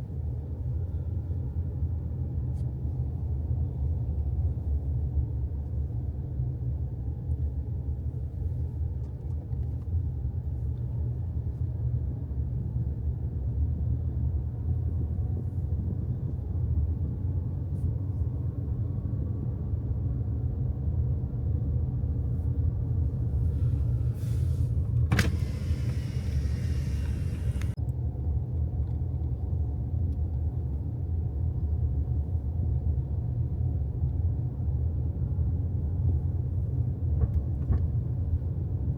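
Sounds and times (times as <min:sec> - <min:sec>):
car road rumble: 0:00.0 - 0:38.9
sharp hiss: 0:23.6 - 0:27.8.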